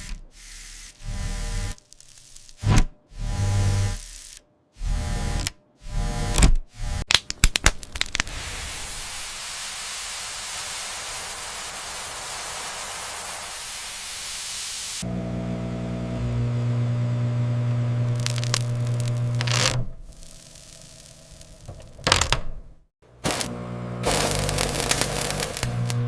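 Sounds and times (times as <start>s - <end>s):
steady hiss: 7.8s - 15.0s, 20.0s - 21.9s
microwave oven humming: 15.0s - 19.7s, 23.2s - 26.0s.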